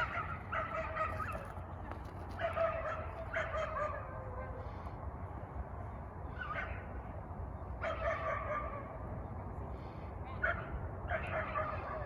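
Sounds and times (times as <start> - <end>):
dog barking: 0.0 - 1.5, 2.4 - 4.4, 7.8 - 8.9, 10.3 - 12.0.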